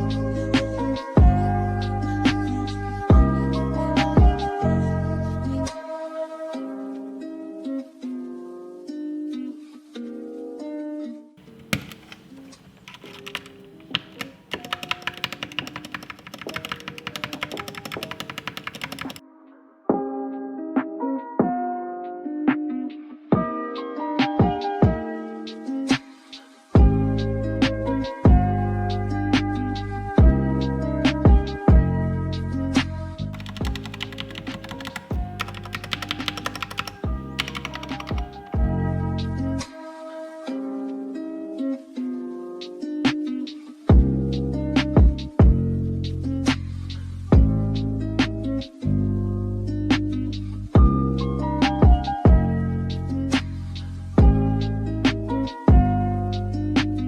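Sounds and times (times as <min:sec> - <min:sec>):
mechanical keyboard typing: 0:11.4 - 0:19.2, 0:33.4 - 0:38.7
background music: 0:11.4 - 0:57.0.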